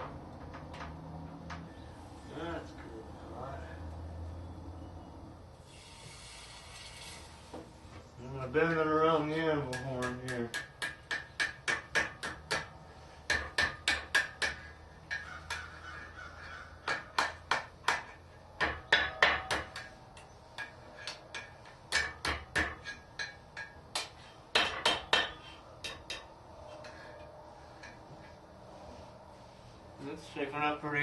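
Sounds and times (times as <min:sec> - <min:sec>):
hammer striking hot metal on anvil: 0:09.7 - 0:12.7, 0:13.3 - 0:15.6, 0:16.9 - 0:20.0, 0:20.6 - 0:26.3.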